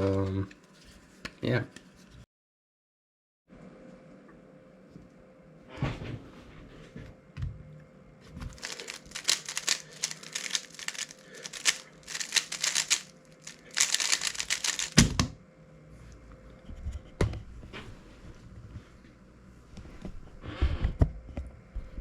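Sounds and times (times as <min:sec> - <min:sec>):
plastic cube turns clattering: 0:08.5 - 0:15.3.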